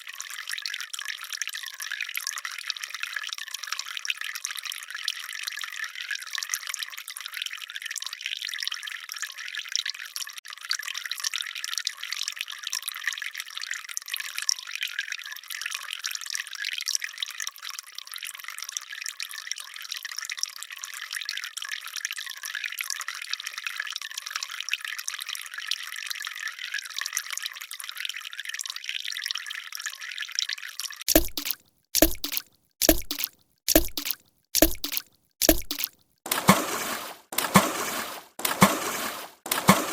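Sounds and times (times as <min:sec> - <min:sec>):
water dripping and trickling: 0:31.1 - 0:35.9.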